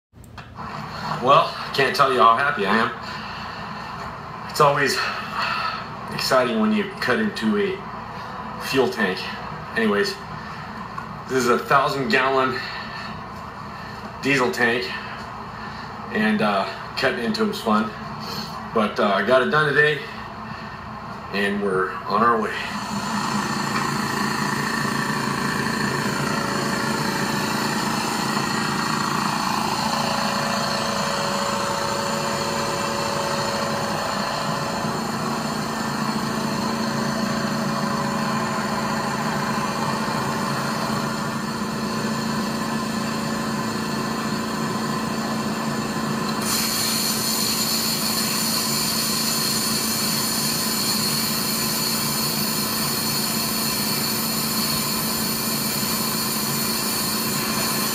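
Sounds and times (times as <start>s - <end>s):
engine running: 0.2s - 17.0s, 22.4s - 57.9s
bright hiss: 46.4s - 57.9s.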